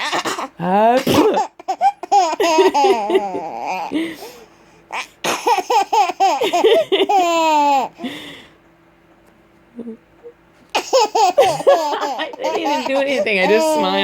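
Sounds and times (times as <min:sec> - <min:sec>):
baby giggling: 0:01.2 - 0:07.9, 0:10.7 - 0:14.0.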